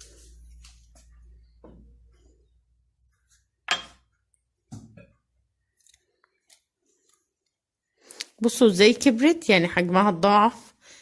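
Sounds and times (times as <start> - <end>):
kitchen things knocking: 3.7 - 4.1.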